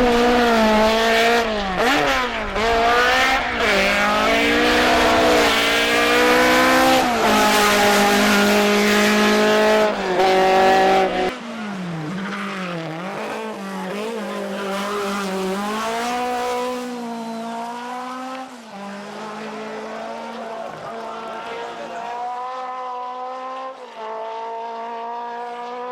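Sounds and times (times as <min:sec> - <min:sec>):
race car engine revving: 0:00.0 - 0:25.9.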